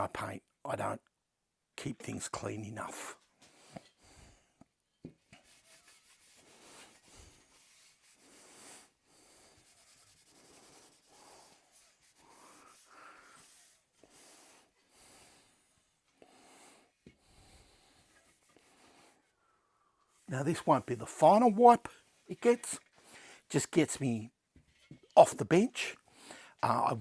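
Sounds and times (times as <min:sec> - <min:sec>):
cloth rubbing strokes: 0:05.4 - 0:14.4.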